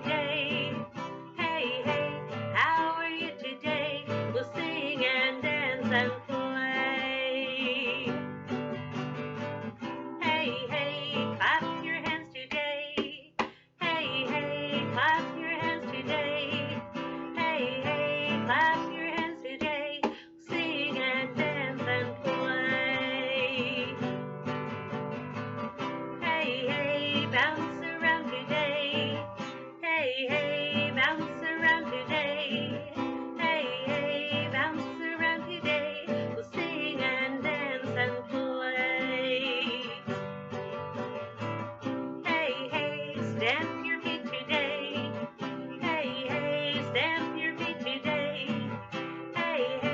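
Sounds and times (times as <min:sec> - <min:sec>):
woman singing: 0:00.0 - 0:08.6, 0:09.8 - 0:24.3, 0:25.8 - 0:49.9
strummed acoustic guitar: 0:00.0 - 0:49.9.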